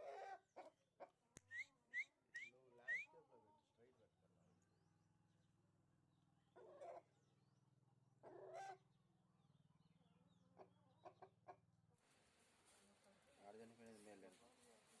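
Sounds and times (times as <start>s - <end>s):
chickens clucking: 10.6s - 11.7s.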